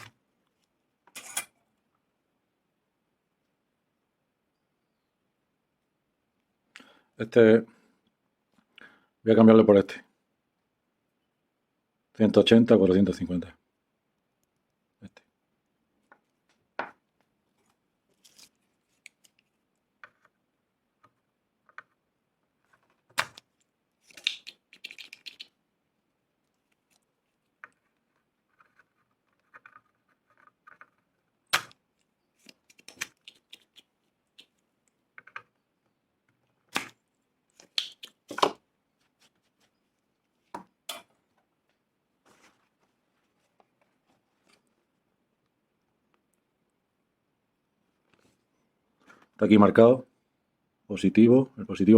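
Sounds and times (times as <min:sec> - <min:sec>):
rustling: 0:17.5 - 0:19.8, 0:41.6 - 0:45.0.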